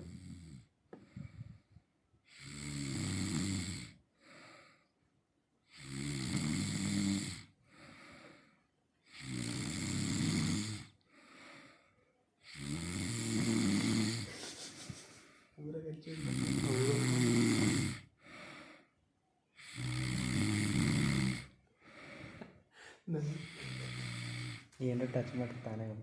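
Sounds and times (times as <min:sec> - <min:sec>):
person snoring heavily: 0:00.0 - 0:01.6, 0:02.3 - 0:04.8, 0:05.7 - 0:11.8, 0:12.4 - 0:18.9, 0:19.6 - 0:26.0
quiet breath out: 0:00.9 - 0:01.9, 0:04.2 - 0:05.0, 0:07.6 - 0:09.0, 0:11.0 - 0:12.6, 0:18.1 - 0:19.6, 0:21.7 - 0:26.0.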